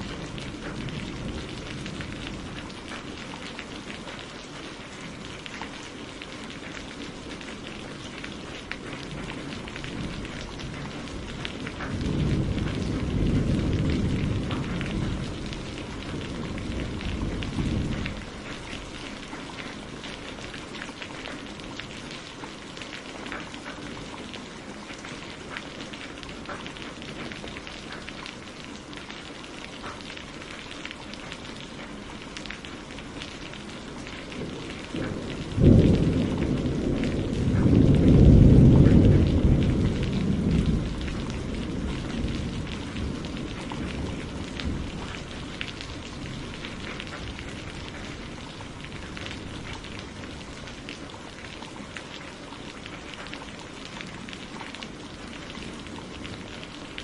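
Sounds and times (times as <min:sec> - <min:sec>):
thunder rumbling: 0:00.0 - 0:05.5, 0:08.4 - 0:22.7, 0:31.4 - 0:57.0
steady rain: 0:00.0 - 0:57.0
thunder clap: 0:09.0 - 0:19.6, 0:34.1 - 0:50.8.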